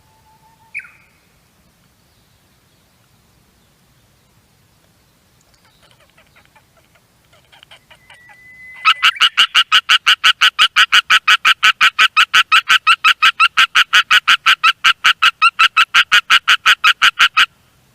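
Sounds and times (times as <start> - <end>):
tree frog calling: 0.0 - 1.3, 5.4 - 17.6.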